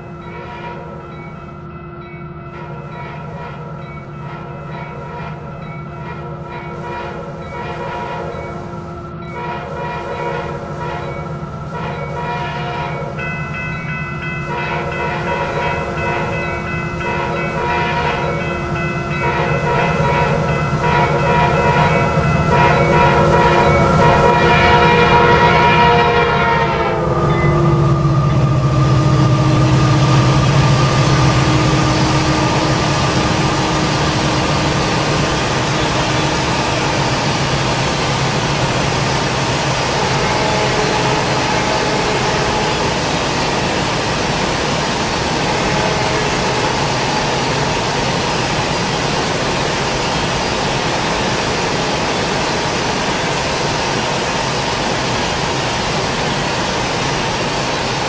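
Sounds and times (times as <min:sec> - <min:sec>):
train horn: 0:00.0 - 0:01.4, 0:02.5 - 0:49.0
locomotive engine drone: 0:00.0 - 0:58.0
rail cars rumbling on rails: 0:00.0 - 0:58.0.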